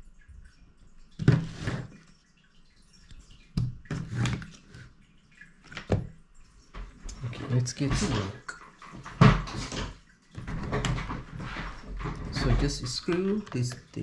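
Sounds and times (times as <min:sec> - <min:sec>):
knocks and clatter on desk: 0:09.0 - 0:13.4.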